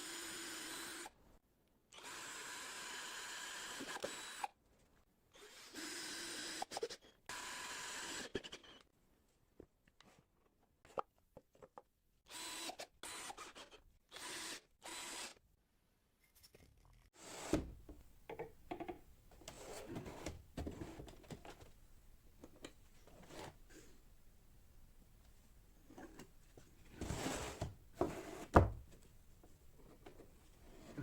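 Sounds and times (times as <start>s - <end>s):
tools clicking and knocking on wood: 17.8s - 21.7s.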